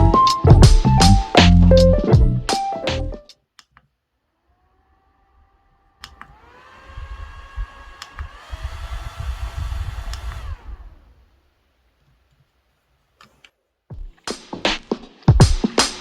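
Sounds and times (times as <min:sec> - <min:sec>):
handheld fan motor whirring: 0:04.5 - 0:11.2
low rumble of air on microphone: 0:06.8 - 0:11.3.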